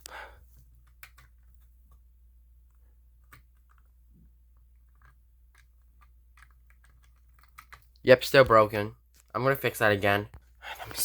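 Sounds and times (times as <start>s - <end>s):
steady low hum: 0.0s - 8.0s.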